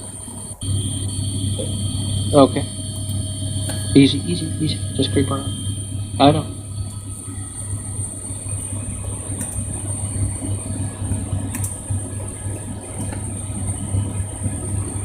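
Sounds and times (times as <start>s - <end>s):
low engine-like drone: 0.0s - 15.0s
thin high whine: 0.0s - 15.0s.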